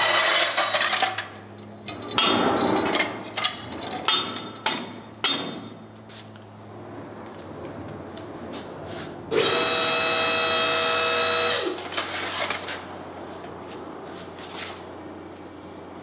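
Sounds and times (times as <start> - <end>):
power tool motor whining: 9.3 - 12.0.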